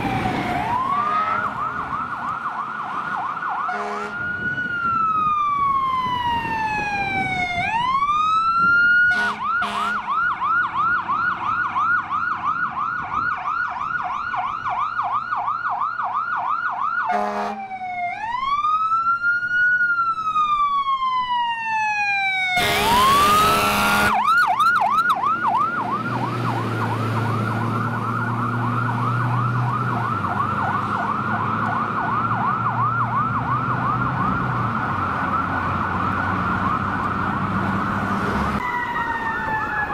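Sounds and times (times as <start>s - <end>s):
truck engine rumble: 0.0s - 16.9s, 17.8s - 39.9s
fire engine siren wailing and yelping: 0.0s - 39.9s
loud horn blast: 0.8s - 1.7s, 3.7s - 4.2s, 9.1s - 10.1s, 17.1s - 17.6s, 22.6s - 24.2s.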